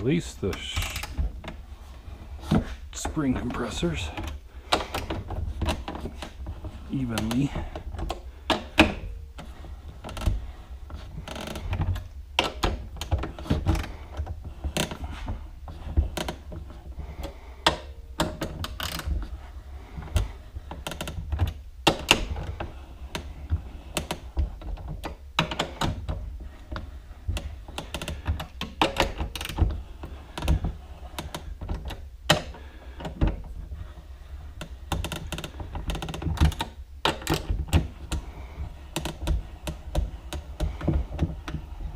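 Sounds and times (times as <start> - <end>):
steady low hum: 0.0 - 41.9
metal clicks and knocks: 2.4 - 19.3, 34.6 - 38.2.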